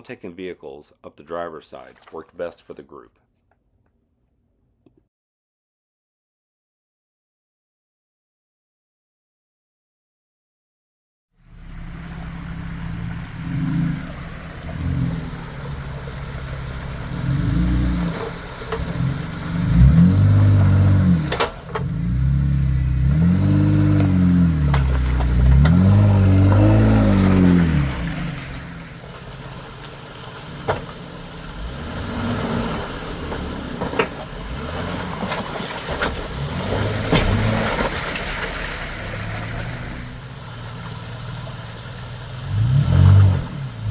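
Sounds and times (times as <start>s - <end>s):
off-road vehicle engine revving: 11.4s - 43.9s.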